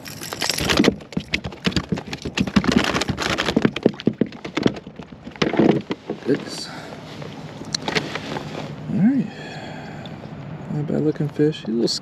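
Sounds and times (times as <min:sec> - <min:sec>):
fish flopping knocks and slaps: 0:00.0 - 0:06.4.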